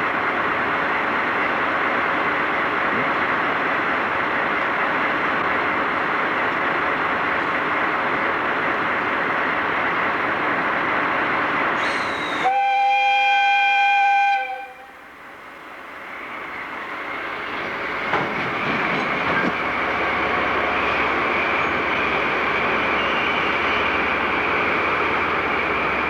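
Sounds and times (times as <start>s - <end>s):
rushing train noise: 0.0s - 26.0s
train whistle: 11.8s - 15.1s.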